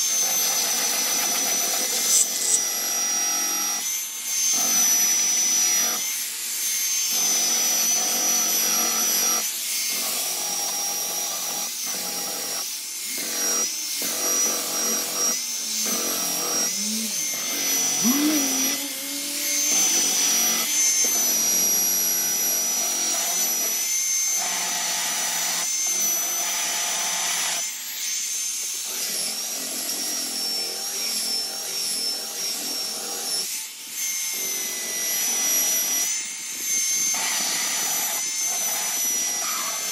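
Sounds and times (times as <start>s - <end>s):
electric sander whining: 0.0s - 28.0s.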